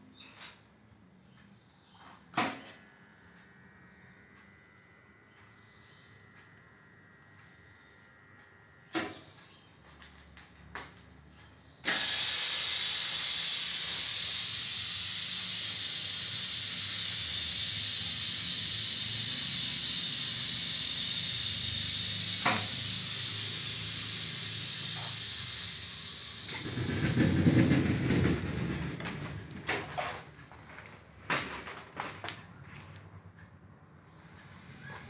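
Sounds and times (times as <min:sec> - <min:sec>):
compressed air hissing: 0:11.8 - 0:29.0.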